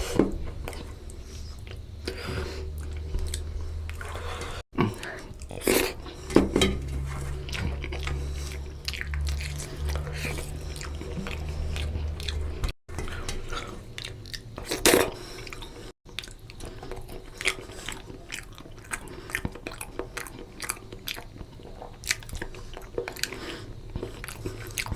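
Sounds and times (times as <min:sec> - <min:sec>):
close-up chewing with mouth smacks: 0:00.6 - 0:06.3, 0:07.3 - 0:24.9
low rumble: 0:05.5 - 0:12.7.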